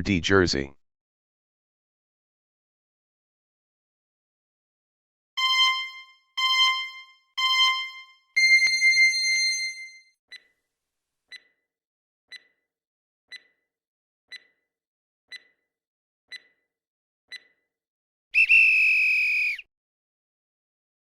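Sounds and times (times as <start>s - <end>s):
timer ticking: 5.4s - 9.6s, 11.3s - 11.6s, 12.3s - 12.6s, 13.3s - 13.6s, 14.3s - 14.7s, 15.3s - 15.7s, 16.3s - 16.7s, 17.3s - 17.6s
loud electronic alarm tone: 5.4s - 10.0s.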